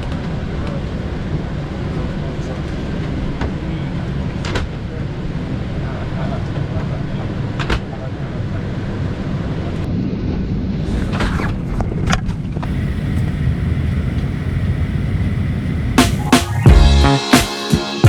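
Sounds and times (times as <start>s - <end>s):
airliner cabin rumble: 12.6s - 16.6s
background music with drums: 16.0s - 18.0s.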